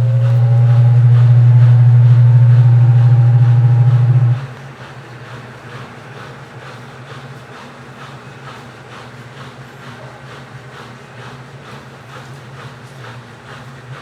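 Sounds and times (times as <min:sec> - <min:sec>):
washing machine motor hum: 0:00.0 - 0:05.6.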